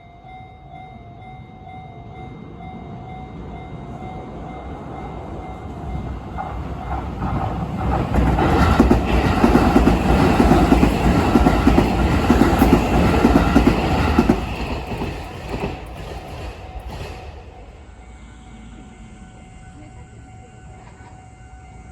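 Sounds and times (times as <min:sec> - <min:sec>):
electric train passing: 0:00.0 - 0:21.9
train wheels clacking: 0:05.2 - 0:17.9.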